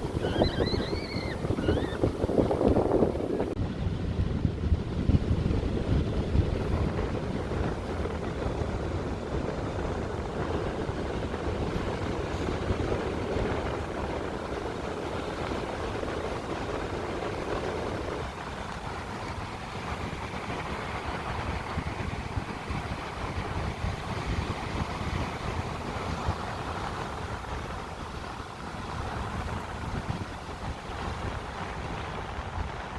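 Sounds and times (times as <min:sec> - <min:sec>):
sea surf rushing: 0:00.0 - 0:03.6
wind buffeting microphone: 0:00.0 - 0:32.9.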